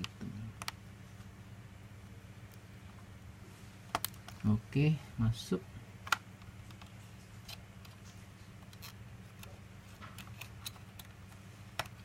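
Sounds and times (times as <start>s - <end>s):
plastic laptop parts clicking: 0.0s - 0.8s, 3.9s - 4.5s, 6.0s - 12.0s
low steady hum: 0.0s - 12.0s.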